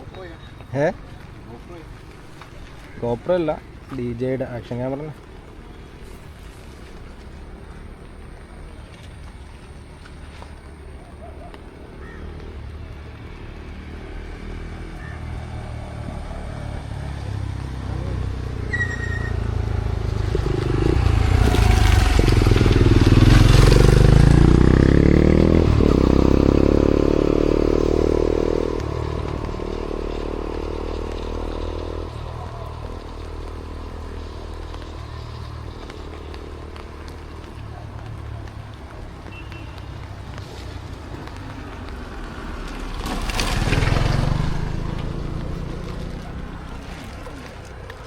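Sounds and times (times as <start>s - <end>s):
vehicle engine passing by: 12.0s - 48.0s.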